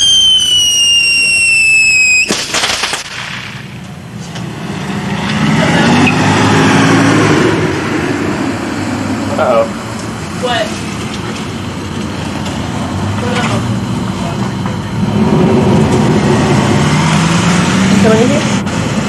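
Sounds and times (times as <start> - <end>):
firework bang: 0.0 - 3.9
whistling firework: 0.0 - 3.9
firework crackling: 0.0 - 4.9
vehicle passing: 3.4 - 19.0.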